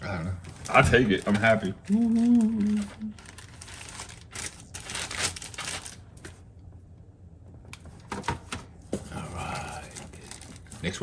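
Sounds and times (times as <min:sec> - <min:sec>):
plastic packaging crinkling: 0:00.4 - 0:06.4, 0:09.6 - 0:11.0.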